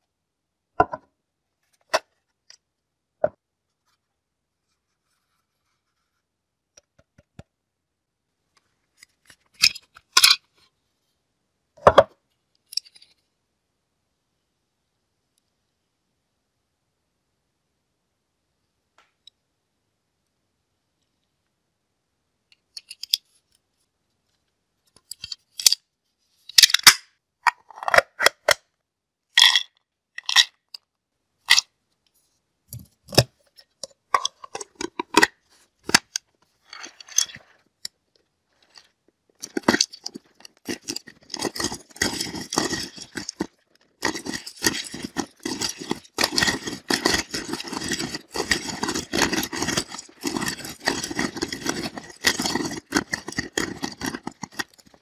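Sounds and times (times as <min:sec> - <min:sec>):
nuts crunching in grinder: 0:39.4 - 0:55.0.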